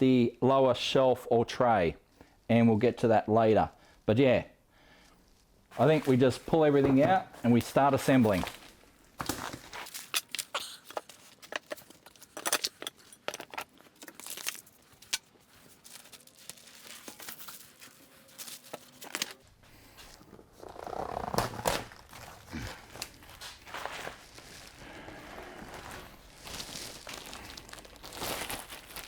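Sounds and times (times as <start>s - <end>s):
cardboard tearing and crinkling: 5.8s - 11.8s, 14.0s - 19.4s, 20.4s - 29.0s.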